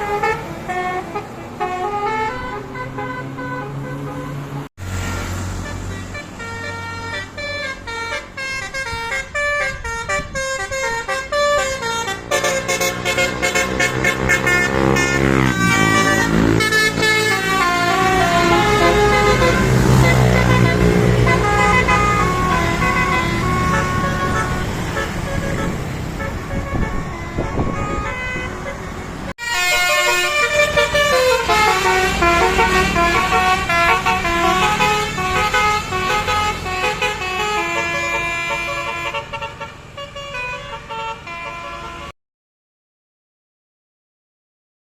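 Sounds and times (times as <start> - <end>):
bus engine running: 0.0 - 42.1
musical bus horn melodies: 0.0 - 42.2.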